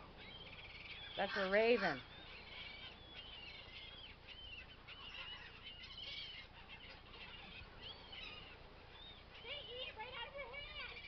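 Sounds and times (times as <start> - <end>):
flock of birds calling: 0.0 - 11.0.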